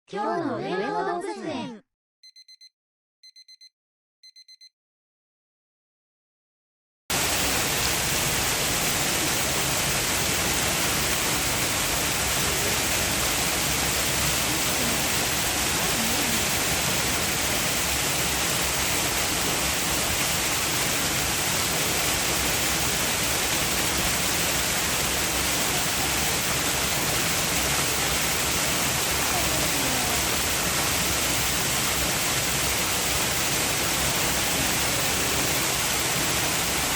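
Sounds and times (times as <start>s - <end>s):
short electronic beeps: 2.2s - 4.7s
rain falling: 7.1s - 36.9s.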